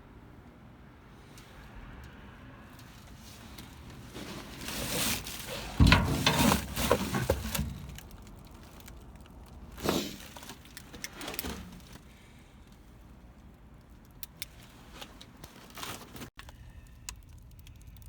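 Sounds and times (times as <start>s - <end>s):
rustling: 2.8s - 12.3s, 14.5s - 16.3s
junk clattering: 4.1s - 8.9s.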